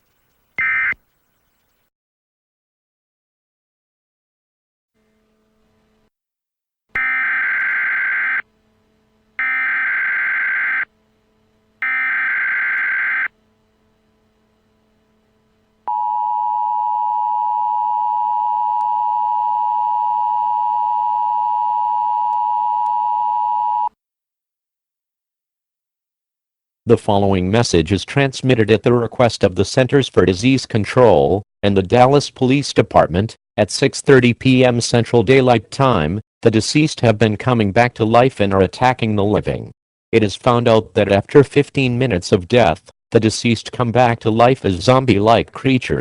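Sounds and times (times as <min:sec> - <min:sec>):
two-tone attention signal: 0:07.0 - 0:08.4, 0:09.4 - 0:10.8, 0:11.8 - 0:13.3
digital data bursts: 0:09.4 - 0:10.8, 0:11.8 - 0:13.3.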